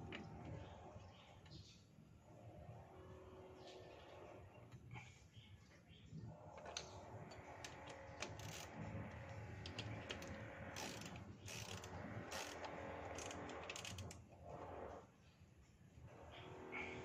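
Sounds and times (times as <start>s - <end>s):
ratchet wrench clicking: 9.8s - 14.1s.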